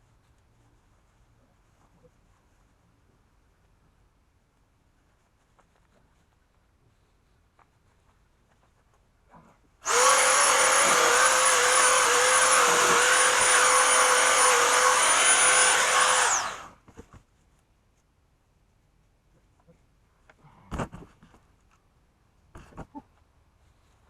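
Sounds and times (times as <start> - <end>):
power tool motor whining: 9.8 - 16.8.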